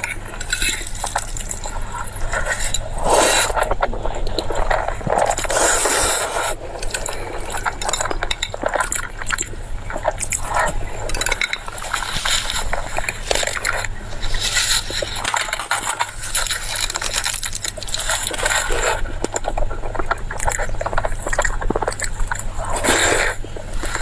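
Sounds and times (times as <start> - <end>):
wet chewing: 0.0 - 24.0.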